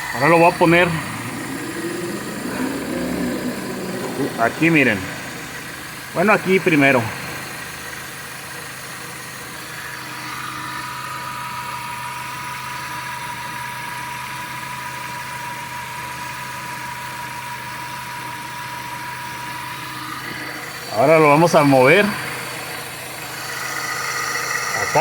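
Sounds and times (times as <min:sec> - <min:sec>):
thin steady whine: 0:00.0 - 0:08.1
car engine idling: 0:00.0 - 0:10.1.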